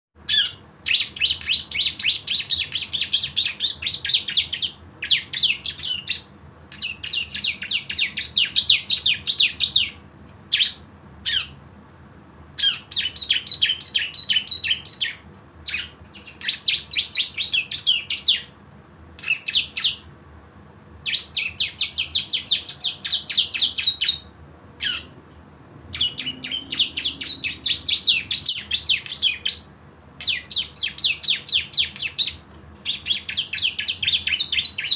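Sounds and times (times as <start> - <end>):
bird singing rapid high notes: 0.2 - 11.6, 12.6 - 18.5, 19.2 - 20.1, 21.0 - 34.9.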